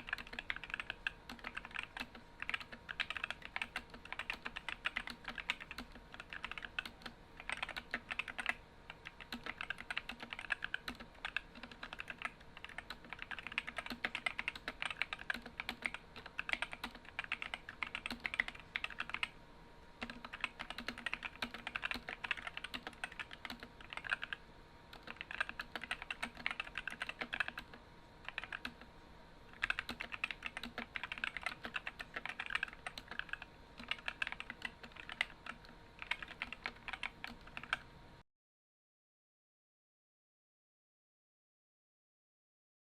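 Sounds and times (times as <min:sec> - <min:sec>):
mechanical keyboard typing: 0:00.0 - 0:19.4, 0:20.0 - 0:28.9, 0:29.5 - 0:37.9.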